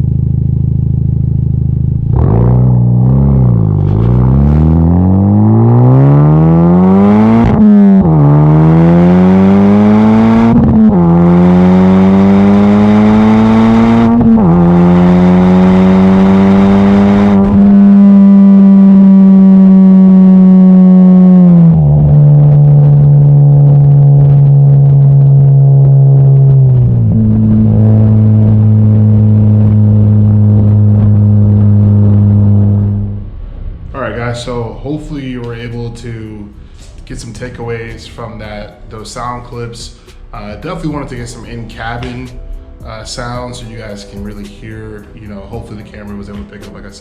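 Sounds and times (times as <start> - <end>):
car engine accelerating through gears: 0.0 - 34.2.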